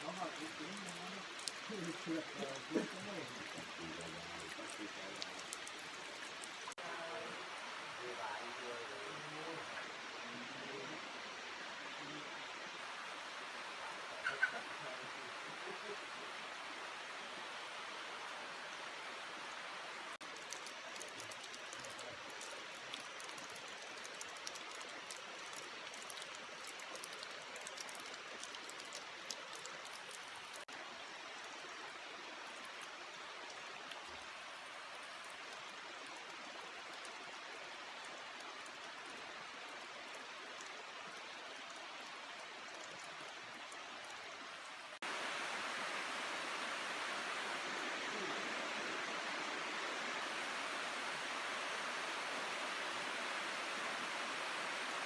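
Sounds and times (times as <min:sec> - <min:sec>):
raindrop ticks on a surface: 0:00.0 - 0:06.6, 0:20.2 - 0:30.6
heavy rain falling: 0:00.0 - 0:11.0, 0:44.7 - 0:55.0.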